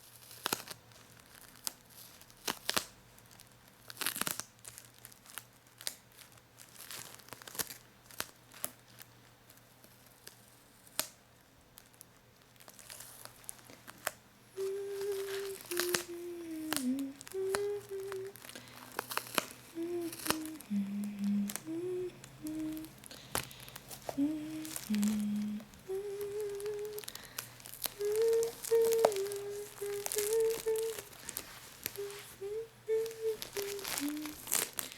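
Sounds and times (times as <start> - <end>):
paper and plastic crinkling: 0.0 - 11.0, 11.7 - 34.9
person humming: 14.5 - 34.9.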